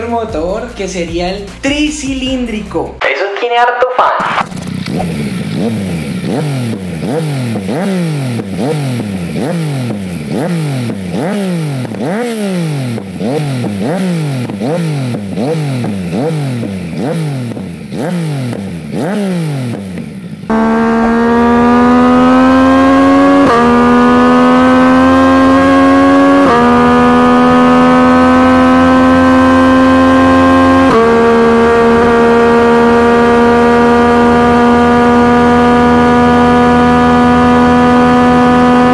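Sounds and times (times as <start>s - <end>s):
motorcycle engine revving: 4.3s - 38.9s
motorcycle accelerating through gears: 4.4s - 38.9s.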